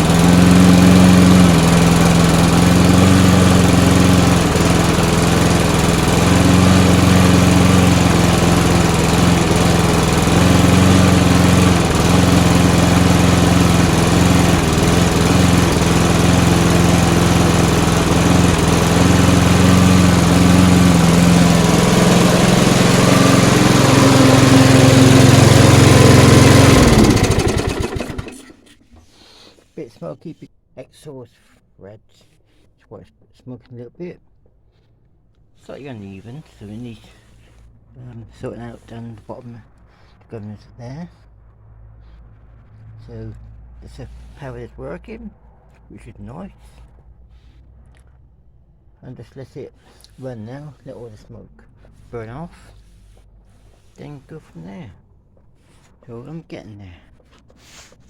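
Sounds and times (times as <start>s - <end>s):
lawnmower engine running: 0.0s - 29.1s.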